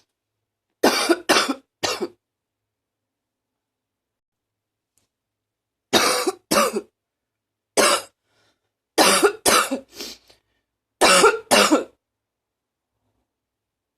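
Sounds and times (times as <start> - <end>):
woman coughing: 0.8 - 2.2, 6.0 - 6.9, 7.8 - 8.2, 9.0 - 9.9, 11.0 - 12.0.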